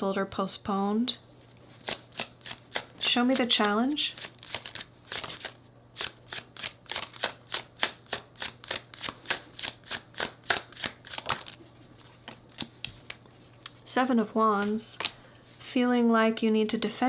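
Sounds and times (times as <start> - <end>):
cards being shuffled: 1.7 - 13.2.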